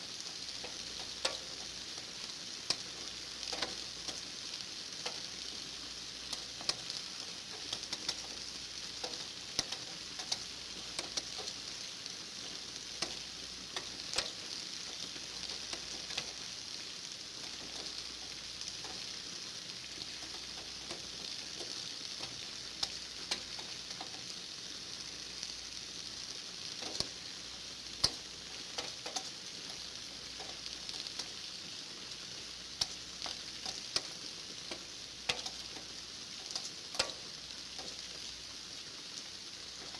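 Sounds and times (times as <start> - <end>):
steady rain hiss: 0.0 - 39.9
raindrops tapping: 0.3 - 4.3, 6.3 - 11.8, 12.4 - 16.6, 17.3 - 24.3, 26.8 - 27.3, 28.0 - 31.4, 32.8 - 38.3.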